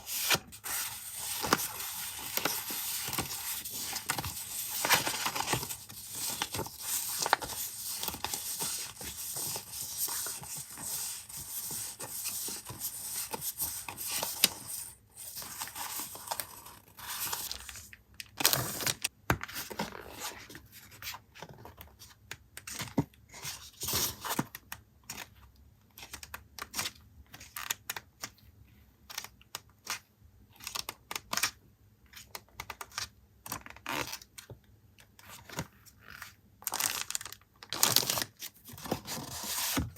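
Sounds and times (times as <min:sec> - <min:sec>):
packaging rustling and crinkling: 0:00.0 - 0:19.1.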